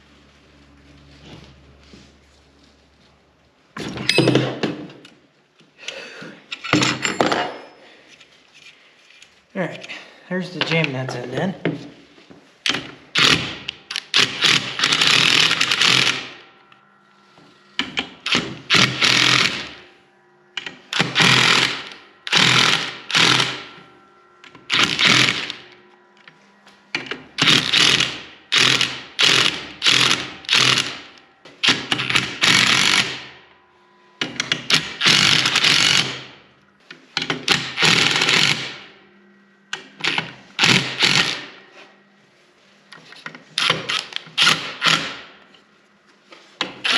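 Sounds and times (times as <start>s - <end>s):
impact wrench rattling: 12.6s - 16.4s, 17.8s - 19.8s, 20.6s - 23.8s, 24.5s - 25.6s, 27.0s - 33.2s, 37.2s - 38.8s.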